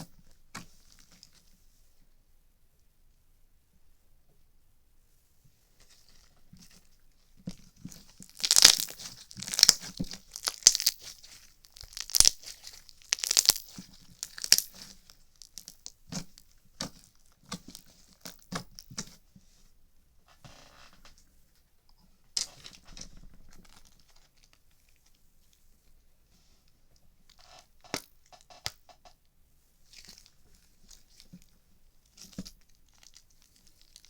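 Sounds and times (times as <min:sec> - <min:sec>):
crackling pops: 0:07.9 - 0:19.2.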